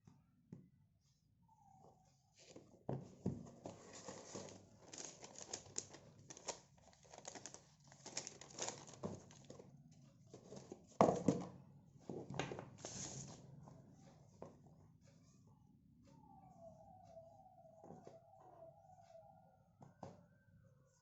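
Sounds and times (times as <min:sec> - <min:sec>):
box and wrapping rustling: 0:02.5 - 0:09.7, 0:10.3 - 0:11.4, 0:12.8 - 0:13.4.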